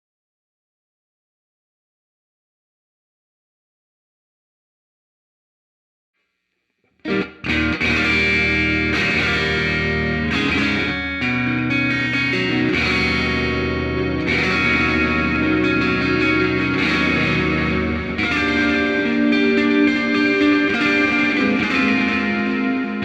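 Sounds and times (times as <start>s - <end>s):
electric guitar chords: 7.0s - 23.0s.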